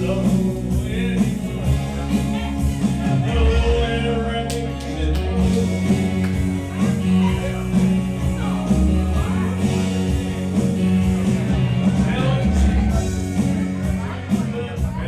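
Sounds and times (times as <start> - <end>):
man singing: 0.0 - 10.6, 11.7 - 15.0
country karaoke backing track: 0.0 - 15.0.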